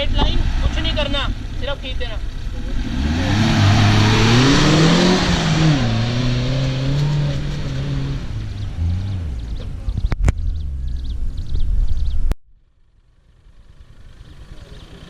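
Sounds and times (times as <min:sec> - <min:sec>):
engine revving under full throttle: 0:02.5 - 0:11.2.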